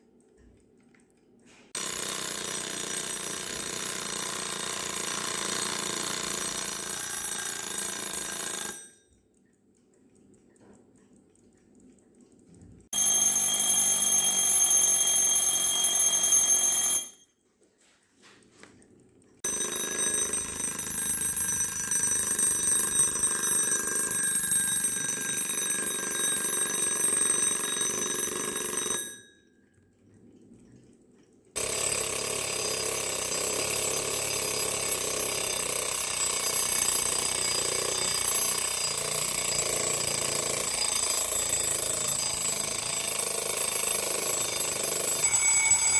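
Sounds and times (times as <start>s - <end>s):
alarm clock bells ringing: 1.8s - 9.1s, 12.9s - 17.4s, 19.4s - 29.6s, 31.6s - 45.9s.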